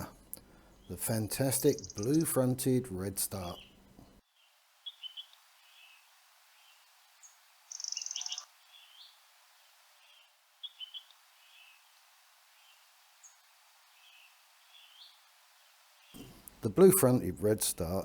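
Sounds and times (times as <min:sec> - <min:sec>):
faint bird chirps: 0:00.0 - 0:02.5, 0:03.4 - 0:09.3, 0:10.0 - 0:15.3
rapid high bird trill: 0:00.8 - 0:02.6, 0:03.3 - 0:06.0, 0:07.7 - 0:09.2, 0:10.1 - 0:11.8.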